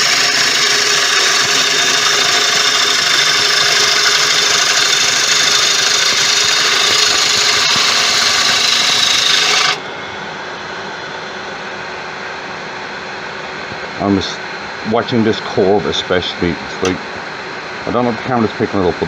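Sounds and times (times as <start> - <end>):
lathe tool cutting wood: 0.0 - 9.8
wood lathe running: 0.0 - 9.8.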